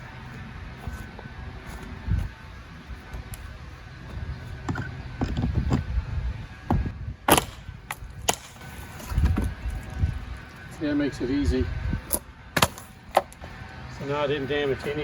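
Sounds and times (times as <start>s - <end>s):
wood knocking and creaking: 4.1s - 5.9s.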